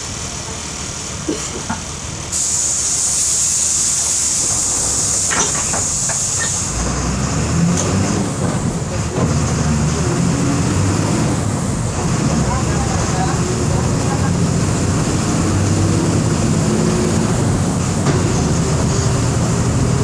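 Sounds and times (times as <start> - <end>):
bus engine running: 0.0 - 20.0
compressed air hiss: 2.3 - 6.8.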